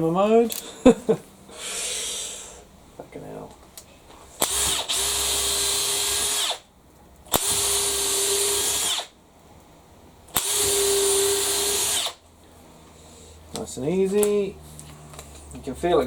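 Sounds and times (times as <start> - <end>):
cordless drill boring into hardwood: 4.4 - 6.7, 7.3 - 9.2, 10.3 - 12.2.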